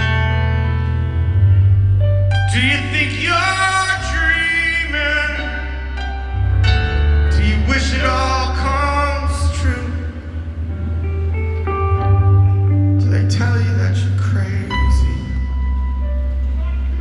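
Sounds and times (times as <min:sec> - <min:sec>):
live rock band: 0:00.0 - 0:17.0.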